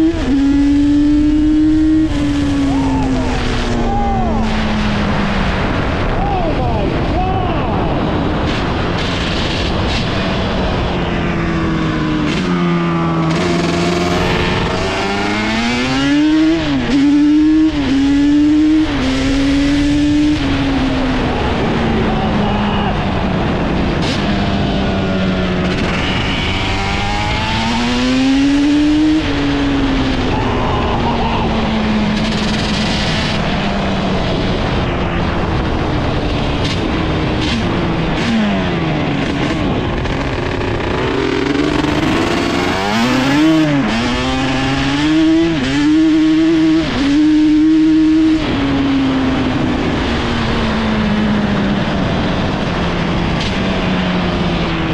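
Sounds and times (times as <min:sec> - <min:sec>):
two-stroke engine revving: 0:00.0 - 0:05.6, 0:11.6 - 0:21.4, 0:23.7 - 0:30.4, 0:31.0 - 0:34.8, 0:36.5 - 0:53.7.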